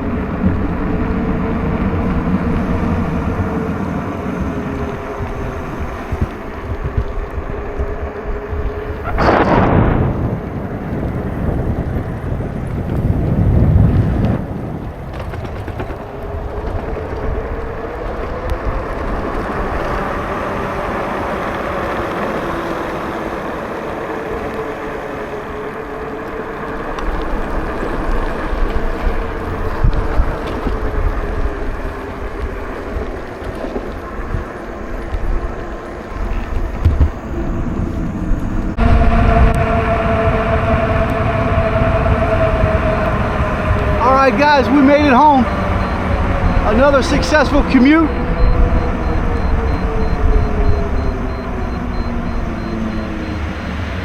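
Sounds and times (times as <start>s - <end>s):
low rumble: 0.0s - 19.8s, 35.0s - 54.0s
electric motor whine: 0.0s - 54.0s
tyre noise on wet street: 0.0s - 54.0s
wind: 0.0s - 54.0s.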